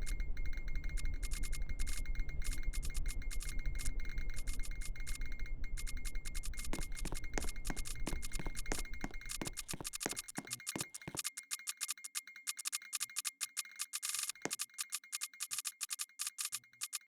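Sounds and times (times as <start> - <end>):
low hum: 0.0 - 10.3
rapid electrical clicking: 0.0 - 17.0.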